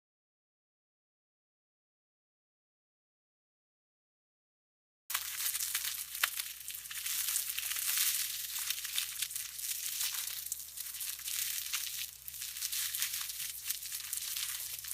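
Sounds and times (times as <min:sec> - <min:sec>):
salad greens crunching: 0:05.1 - 0:14.9.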